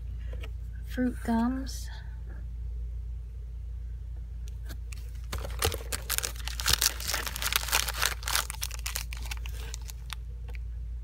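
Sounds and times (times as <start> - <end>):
faint low hum: 0.0 - 11.0
candy packaging crinkling: 4.9 - 10.2.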